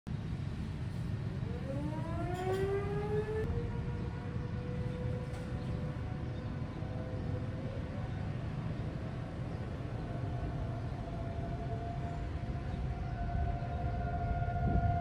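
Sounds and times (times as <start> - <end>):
warning siren winding up: 1.6 - 3.5.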